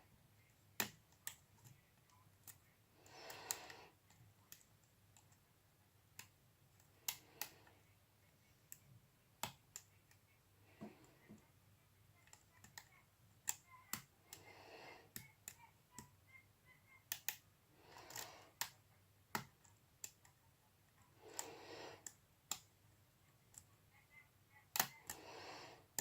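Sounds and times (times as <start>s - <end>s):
soft hissing: 21.1s - 22.1s, 25.1s - 26.0s.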